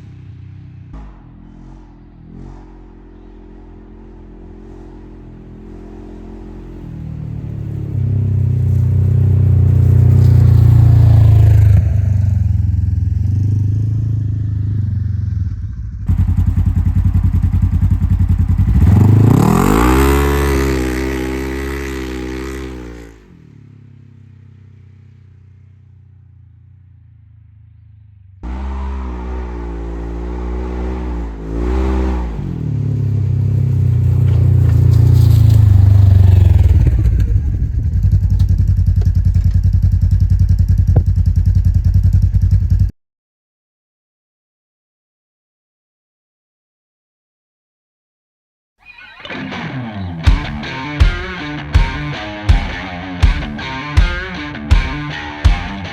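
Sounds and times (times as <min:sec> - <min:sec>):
engine revving: 0:00.0 - 0:23.5, 0:28.4 - 0:40.0, 0:49.1 - 0:55.9.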